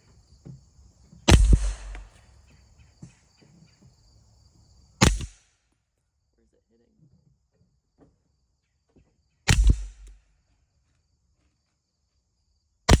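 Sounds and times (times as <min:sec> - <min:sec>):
suppressed rifle gunshot: 0:01.3 - 0:02.2, 0:05.0 - 0:05.4, 0:09.5 - 0:10.2.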